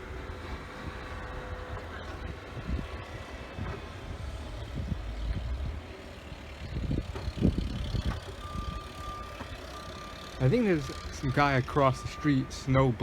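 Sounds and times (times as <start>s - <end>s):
wind buffeting microphone: 0.0s - 9.0s
snowblower engine rumbling: 0.0s - 13.0s.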